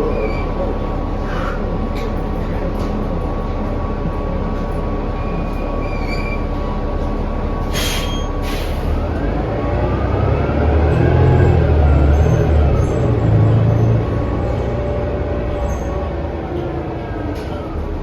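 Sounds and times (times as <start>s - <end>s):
bus drivetrain and road rumble: 0.0s - 18.0s
short air hisses: 7.7s - 8.9s.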